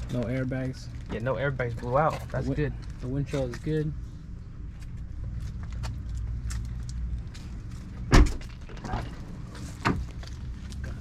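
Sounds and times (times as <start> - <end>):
low steady rumble: 0.0 - 11.0
car door thumping shut: 8.1 - 8.4.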